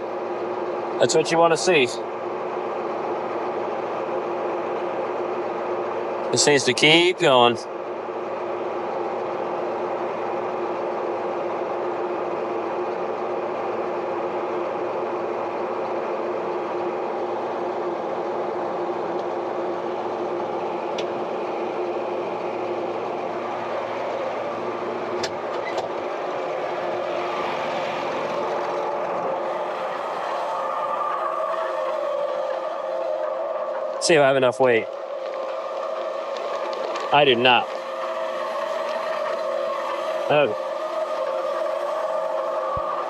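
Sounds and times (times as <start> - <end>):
bag extractor engine running: 17.1 - 43.0.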